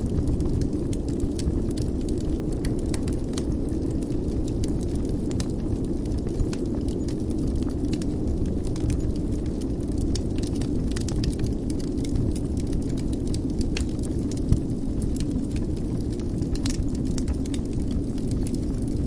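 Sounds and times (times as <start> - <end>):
low rumble of flames: 0.0 - 19.0
wood fire crackling: 0.0 - 19.0.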